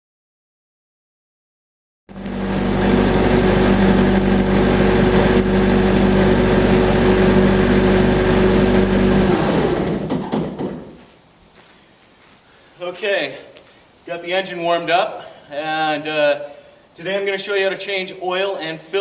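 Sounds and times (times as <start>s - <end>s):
diesel engine running: 2.1s - 10.2s
engine winding down: 2.1s - 10.7s.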